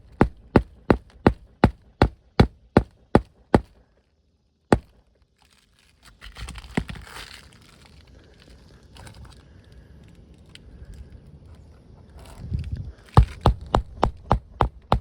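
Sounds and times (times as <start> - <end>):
hammer striking nails: 0.0 - 3.7, 4.7 - 4.9, 13.2 - 15.0
shingles rustling and scraping: 4.8 - 9.5.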